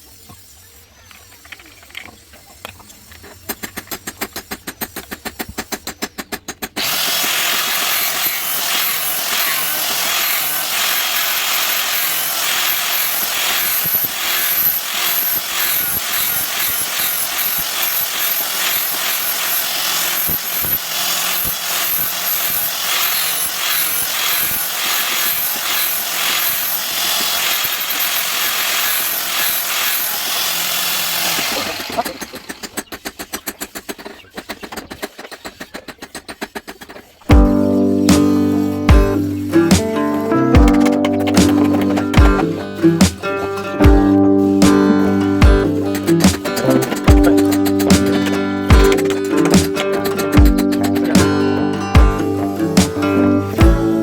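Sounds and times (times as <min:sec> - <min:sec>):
power tool grinding steel: 0:06.7 - 0:34.3, 0:37.2 - 0:54.0
rapid even ticking: 0:45.4 - 0:52.9.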